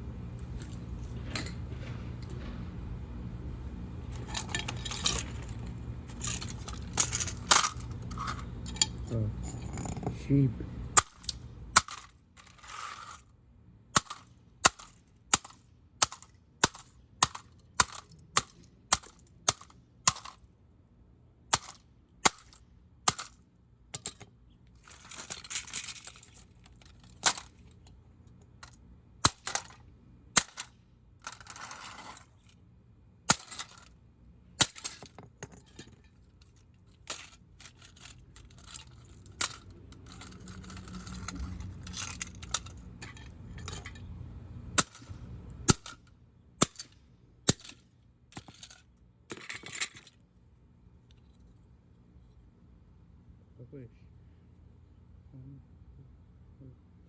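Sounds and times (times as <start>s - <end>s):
noisy crunch or rattle: 0.3s - 13.3s, 24.8s - 27.9s, 28.6s - 32.6s, 34.6s - 50.2s.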